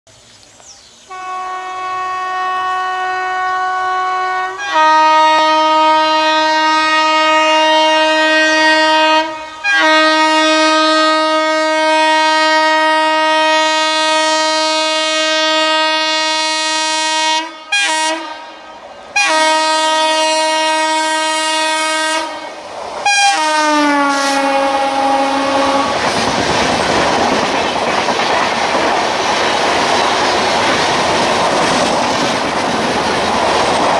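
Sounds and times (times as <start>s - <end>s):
train rumble and wheel clatter: 0.5s - 33.9s
locomotive horn blasts: 1.1s - 26.1s.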